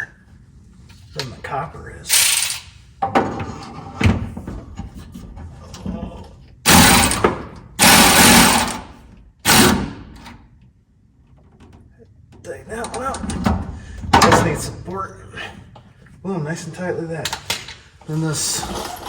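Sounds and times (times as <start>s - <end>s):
electric ratchet wrench running: 2.1s - 2.6s, 6.7s - 8.9s, 9.5s - 9.9s.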